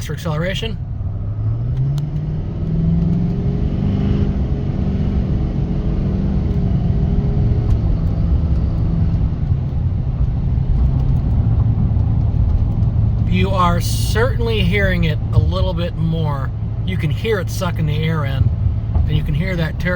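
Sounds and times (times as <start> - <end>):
diesel engine accelerating: 0.0 - 19.9.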